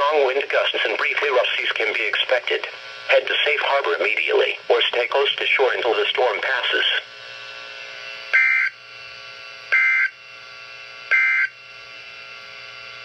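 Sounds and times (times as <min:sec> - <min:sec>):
faint radio hiss and hum: 0:00.0 - 0:07.9.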